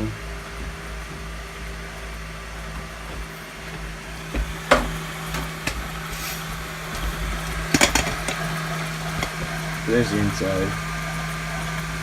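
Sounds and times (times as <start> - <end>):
computer fans humming: 0.0 - 12.0
sharp clicks and knocks: 2.6 - 9.6.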